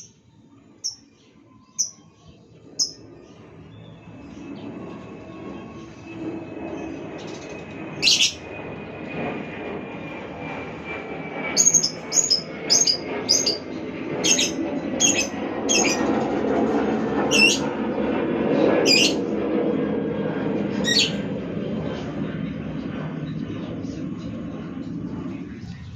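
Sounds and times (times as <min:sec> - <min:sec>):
steady rumbling noise: 0:02.6 - 0:25.9
bird shrill chirps: 0:02.8 - 0:03.2, 0:07.2 - 0:08.5, 0:11.4 - 0:16.1, 0:17.3 - 0:17.7, 0:18.8 - 0:19.2, 0:20.8 - 0:21.3.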